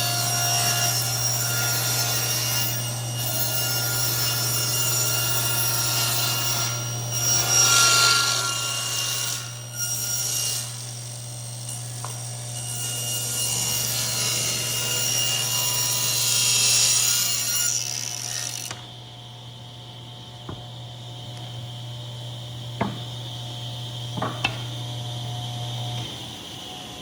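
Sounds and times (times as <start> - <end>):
power saw cutting wood: 0.0 - 18.9.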